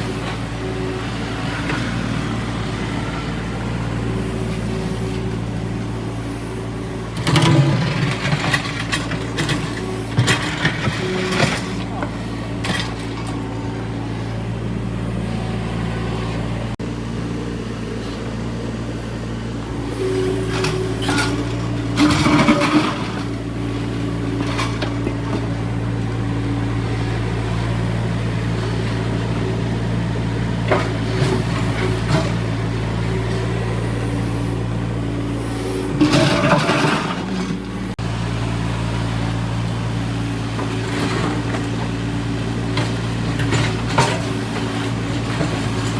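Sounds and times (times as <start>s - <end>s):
excavator engine running: 0.0s - 45.9s
machine clanks and scrapes: 7.1s - 13.4s, 20.0s - 23.5s, 35.5s - 37.9s, 42.8s - 45.9s.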